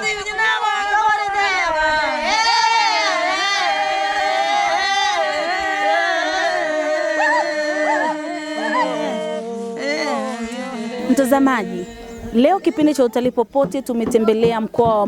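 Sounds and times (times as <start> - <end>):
voices singing without instruments: 0.0 - 15.0.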